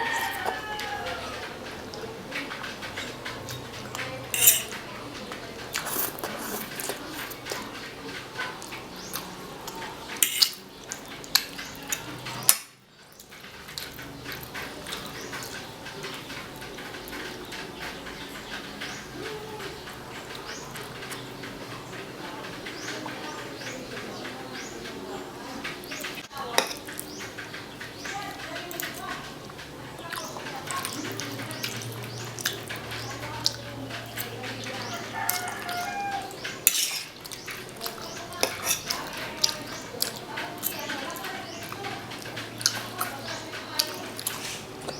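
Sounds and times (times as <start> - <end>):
cutlery clinking against a plate: 0.0 - 44.9
wet chewing mouth clicks: 30.1 - 44.9.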